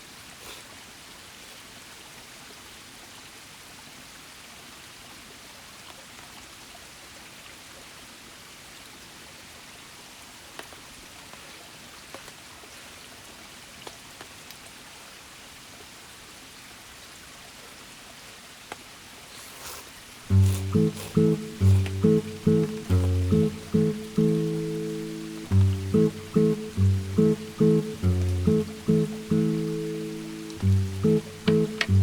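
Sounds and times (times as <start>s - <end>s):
shallow river babbling: 20.3s - 32.0s
faint light ticks: 20.4s - 32.0s.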